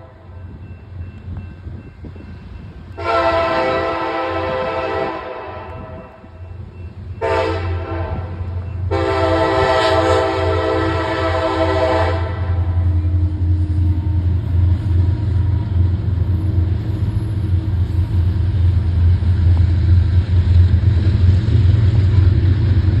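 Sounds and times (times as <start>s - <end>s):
train horn blasts: 0.0s - 0.4s, 2.9s - 6.4s, 7.1s - 15.8s
train rumbling by: 0.0s - 23.0s.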